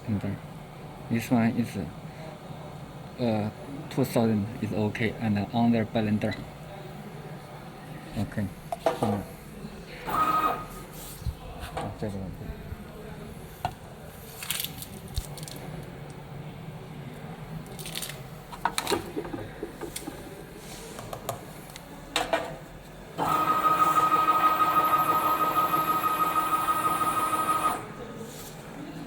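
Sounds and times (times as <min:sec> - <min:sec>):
filling machine whine: 0:23.2 - 0:28.0.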